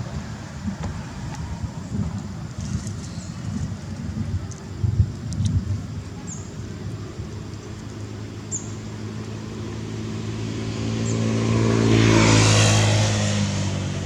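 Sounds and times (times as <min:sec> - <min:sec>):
vehicle passing: 0:08.3 - 0:14.0.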